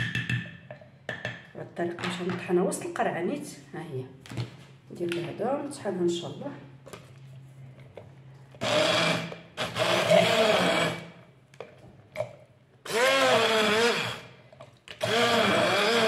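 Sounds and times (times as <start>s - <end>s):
electric blender grinding: 8.6s - 11.2s, 12.9s - 14.4s, 15.0s - 16.0s.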